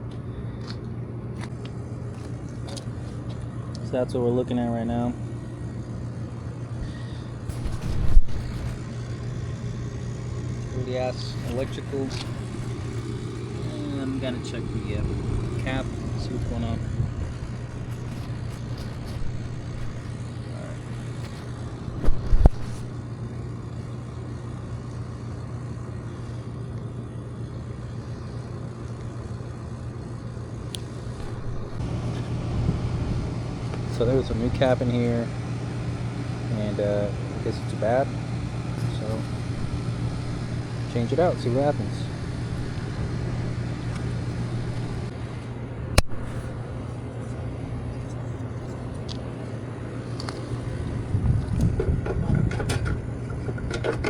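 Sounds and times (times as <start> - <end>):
air conditioner unit humming: 0.0 - 54.0
sharp click: 46.0 - 46.3.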